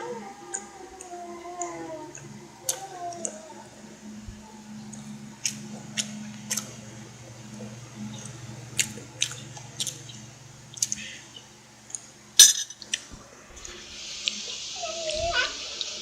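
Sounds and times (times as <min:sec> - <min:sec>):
eating clicks: 0:00.0 - 0:03.7, 0:04.8 - 0:12.1
low steady hum: 0:00.0 - 0:16.0.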